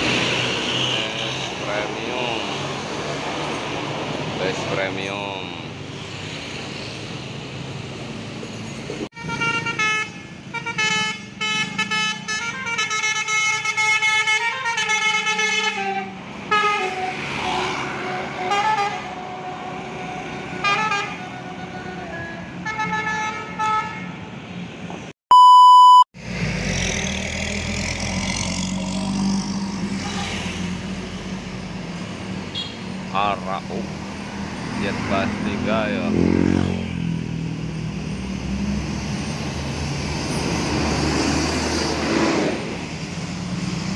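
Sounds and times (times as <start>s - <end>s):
bus engine rumbling: 0.0s - 25.1s, 26.2s - 43.9s
musical bus horn playing a tune: 9.1s - 24.2s
short loud beep: 25.3s - 26.1s.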